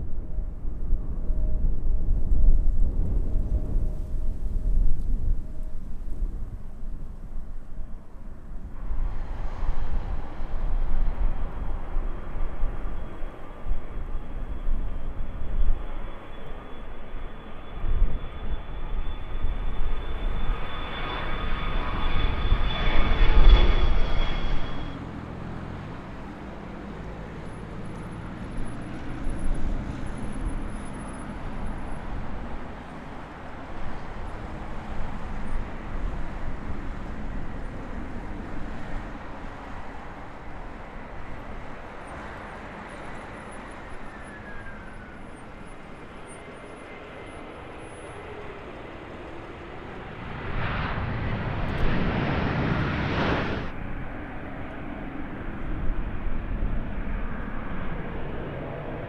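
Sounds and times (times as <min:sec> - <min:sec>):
jet airliner passing: 0:00.0 - 0:59.0
steady jet rumble: 0:00.0 - 0:59.0.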